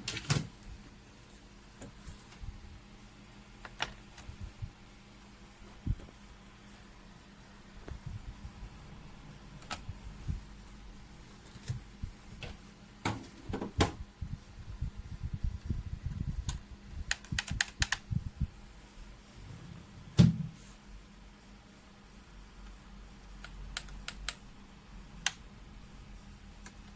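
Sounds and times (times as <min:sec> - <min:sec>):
keyboard keys clicking: 0:16.4 - 0:18.1
loud thud: 0:20.2 - 0:20.6.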